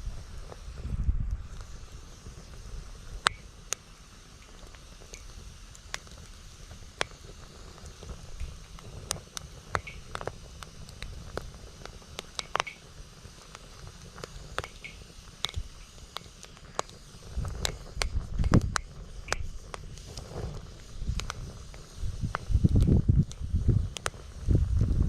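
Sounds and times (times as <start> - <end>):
wind buffeting microphone: 0.0 - 3.2, 17.2 - 25.0
campfire crackling and popping: 0.0 - 25.0.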